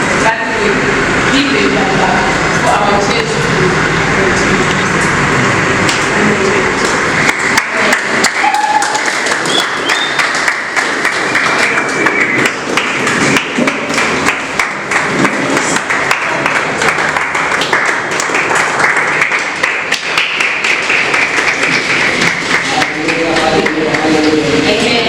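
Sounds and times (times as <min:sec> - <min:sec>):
congregation clapping: 0:05.8 - 0:25.0
din of voices: 0:22.4 - 0:25.0.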